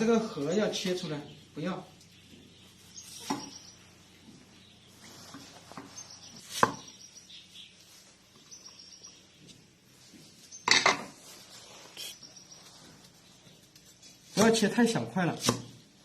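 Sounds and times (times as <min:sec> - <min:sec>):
knife chopping on a board: 0:06.5 - 0:06.9, 0:15.4 - 0:15.8.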